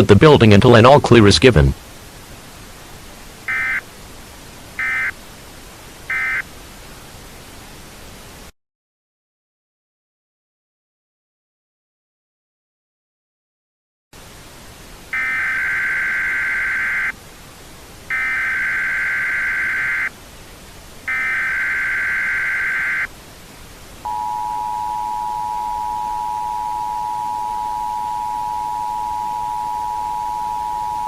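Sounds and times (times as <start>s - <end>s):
background hiss: 0.0s - 8.5s, 14.2s - 31.0s
two-tone attention signal: 3.5s - 3.8s, 4.8s - 5.1s, 6.1s - 6.4s, 24.1s - 31.0s.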